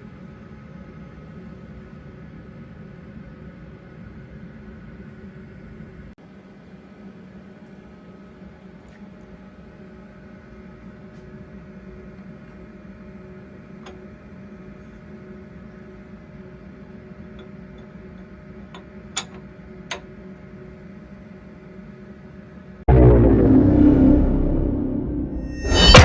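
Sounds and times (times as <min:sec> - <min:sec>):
low machine hum: 0:22.9 - 0:26.0.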